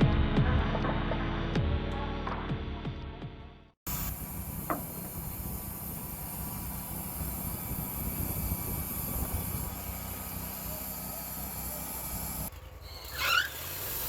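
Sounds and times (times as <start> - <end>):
engine running: 3.9 - 14.0.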